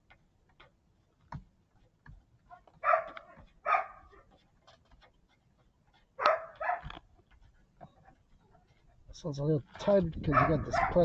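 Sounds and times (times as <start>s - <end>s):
dog barking: 2.5s - 4.2s, 6.2s - 7.0s, 10.3s - 11.0s.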